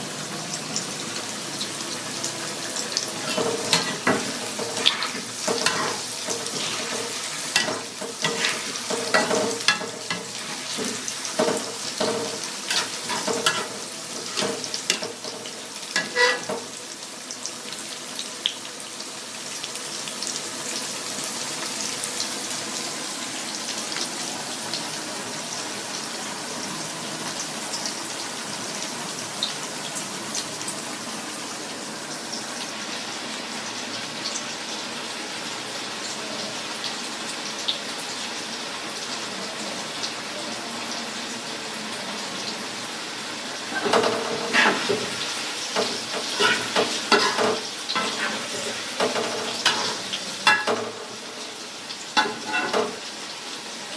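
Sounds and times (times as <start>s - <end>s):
food sizzling in hot oil: 0.0s - 53.9s
utensil scraping a pan: 3.2s - 16.7s, 43.7s - 50.7s, 52.2s - 53.0s.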